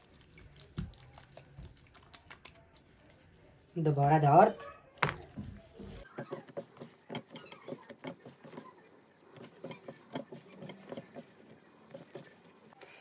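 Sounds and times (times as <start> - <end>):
chicken pieces patted in flour: 0.1 - 2.9.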